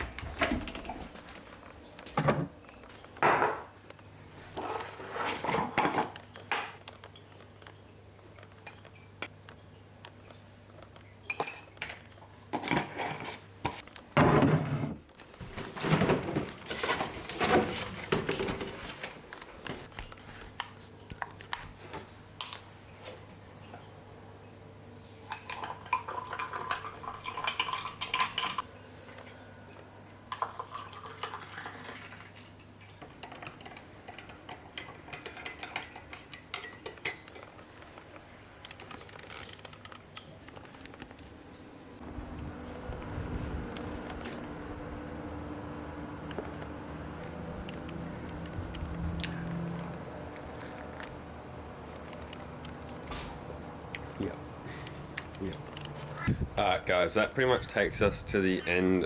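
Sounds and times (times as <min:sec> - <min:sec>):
dishes and cutlery clattering: 0:11.3 - 0:13.4, 0:25.3 - 0:28.6, 0:33.0 - 0:37.6
steady low hum: 0:41.4 - 0:58.4.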